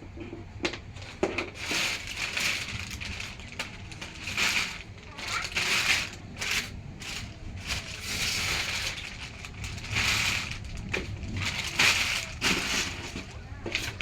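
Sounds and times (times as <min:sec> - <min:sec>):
packaging crinkling and rustling: 0:00.7 - 0:14.0.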